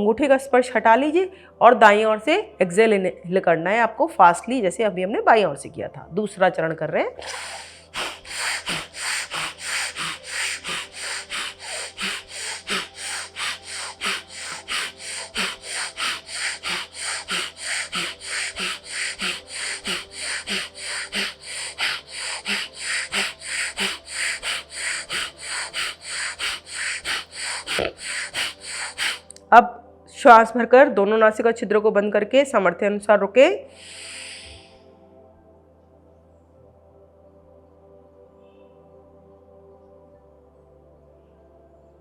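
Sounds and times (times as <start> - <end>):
rapid forceful nasal breathing: 7.2 - 29.4, 33.7 - 35.0.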